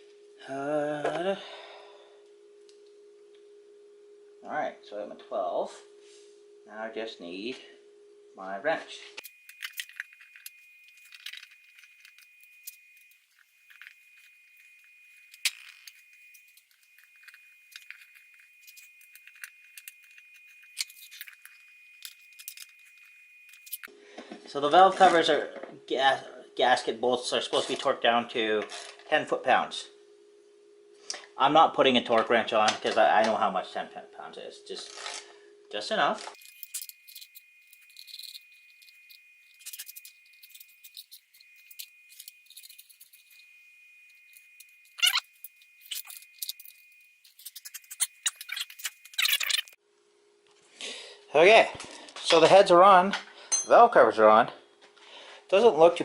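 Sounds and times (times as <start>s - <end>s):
scratchy rasps: 36.4s - 43.5s, 44.3s - 49.8s.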